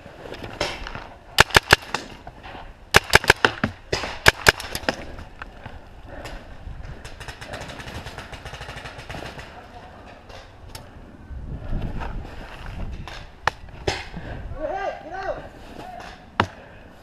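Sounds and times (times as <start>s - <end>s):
paintball markers firing: 3.0s - 5.0s.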